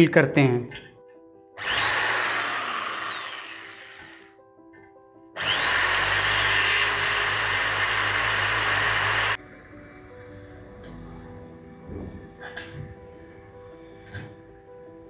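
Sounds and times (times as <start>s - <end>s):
electric drill boring into clay pot: 1.6s - 4.3s, 5.4s - 9.4s.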